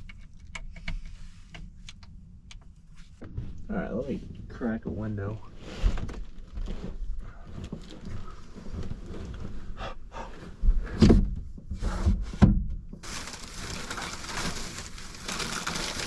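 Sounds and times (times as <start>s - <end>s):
heavy thumps: 3.2s - 4.0s
rustling: 5.4s - 12.4s, 13.0s - 16.0s.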